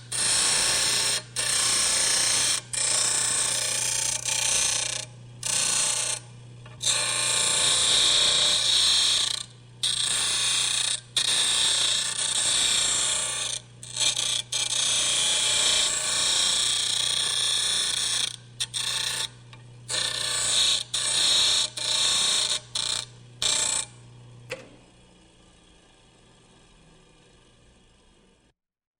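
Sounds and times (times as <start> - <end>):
wood lathe motor humming: 19.9 - 23.9.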